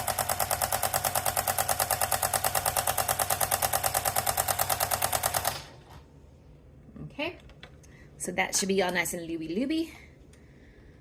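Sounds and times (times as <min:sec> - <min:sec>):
sewing machine clattering: 0:00.0 - 0:05.7.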